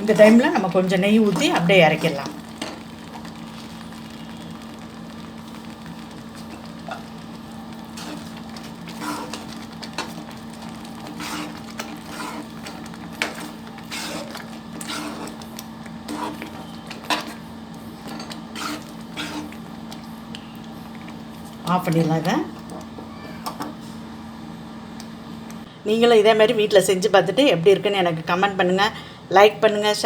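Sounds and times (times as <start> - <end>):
spatula scraping metal pan: 8.0 - 10.2, 11.0 - 15.4, 16.1 - 17.4, 18.0 - 19.6.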